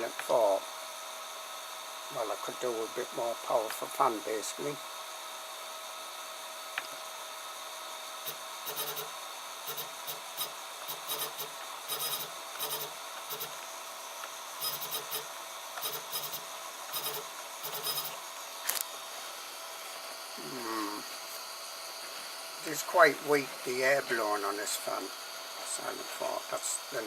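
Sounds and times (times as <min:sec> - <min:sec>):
cooling fan whining: 0:00.0 - 0:27.0
buzzing scraping bursts: 0:08.2 - 0:13.7, 0:14.5 - 0:18.8.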